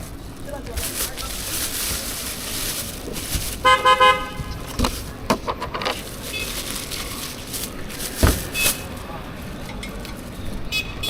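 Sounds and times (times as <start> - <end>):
vehicle horn honk: 3.6 - 4.6, 10.7 - 11.0
sharp knocks and clatters: 8.0 - 8.9.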